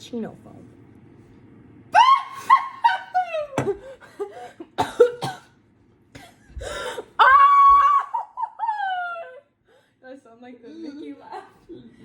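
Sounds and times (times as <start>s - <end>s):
person coughing: 4.4s - 5.6s
high-pitched laughter: 7.3s - 9.5s.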